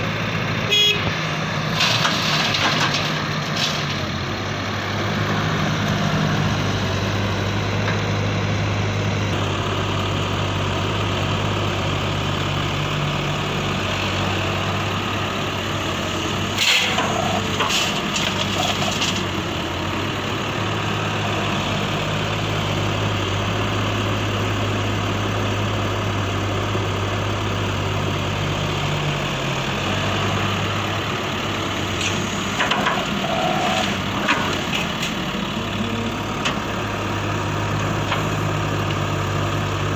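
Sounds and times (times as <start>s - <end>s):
clattering bursts: 1.8s - 4.0s, 16.6s - 19.3s.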